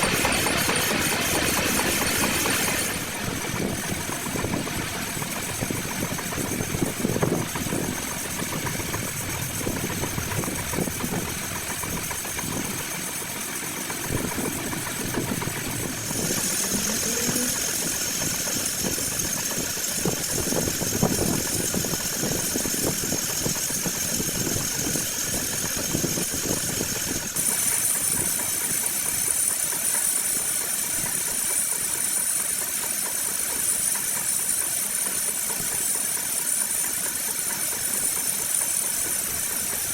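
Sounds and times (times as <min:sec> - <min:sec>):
metal lathe running: 0:00.0 - 0:39.9
high thin whine: 0:15.8 - 0:19.2.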